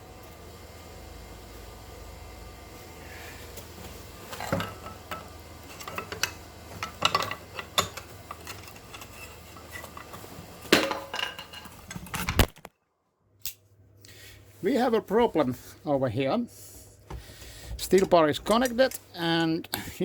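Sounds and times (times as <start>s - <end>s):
iron hinge parts clanking: 17.8s - 19.6s.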